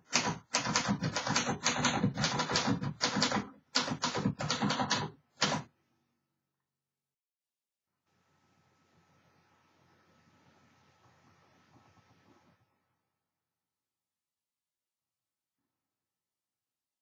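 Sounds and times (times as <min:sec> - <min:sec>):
manual typewriter key strikes: 0:00.1 - 0:05.7.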